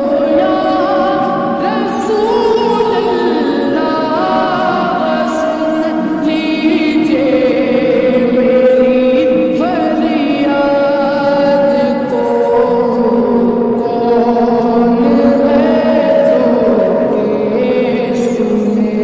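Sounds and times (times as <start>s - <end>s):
voices singing a chant-like melody: 0.0s - 19.0s.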